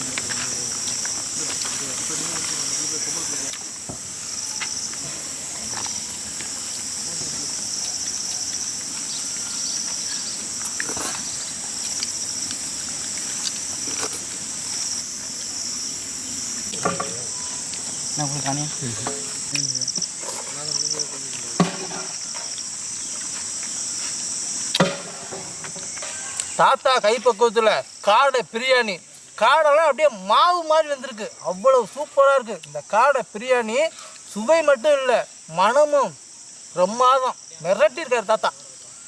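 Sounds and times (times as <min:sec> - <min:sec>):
insects chirring: 0:00.0 - 0:39.0.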